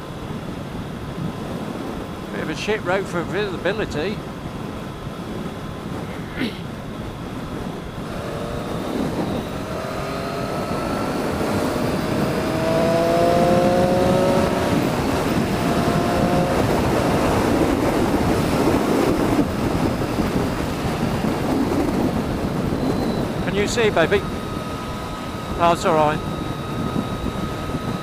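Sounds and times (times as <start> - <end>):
wind rushing on microphone: 0.0 - 28.0
motorcycle engine accelerating: 7.9 - 28.0.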